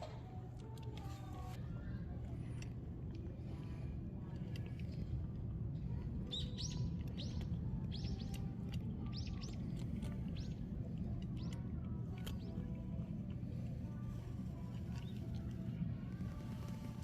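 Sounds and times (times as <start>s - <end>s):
steady low rumble: 0.0s - 17.0s
small bird chirping: 6.3s - 8.5s.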